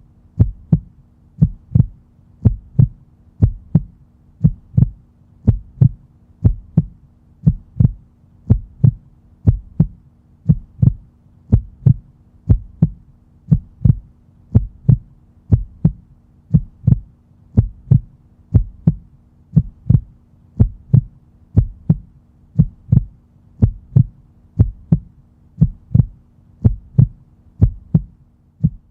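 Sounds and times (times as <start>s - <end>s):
faint low hum: 0.0s - 28.9s
heartbeat thumps: 0.3s - 28.9s.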